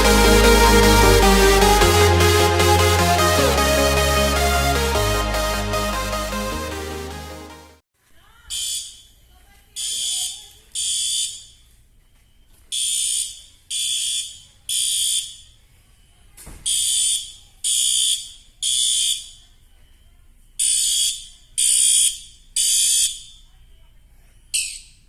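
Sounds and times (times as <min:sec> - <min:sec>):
fire alarm horn beeps: 0:09.8 - 0:11.6, 0:12.8 - 0:15.5, 0:16.7 - 0:19.4, 0:20.6 - 0:23.4.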